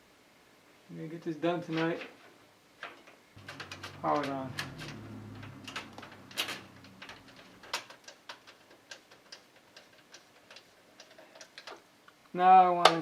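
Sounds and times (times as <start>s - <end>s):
computer parts clicking: 3.4s - 11.8s.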